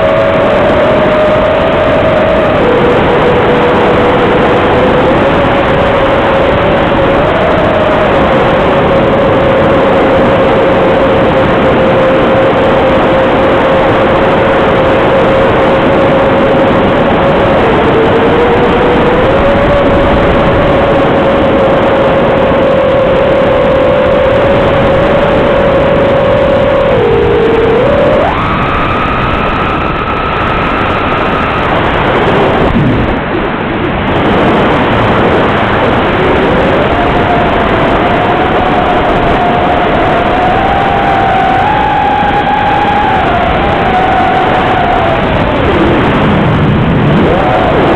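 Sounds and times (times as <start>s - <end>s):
drone motors whining: 0.0s - 33.2s, 34.2s - 47.9s
propeller rushing noise: 0.0s - 47.9s.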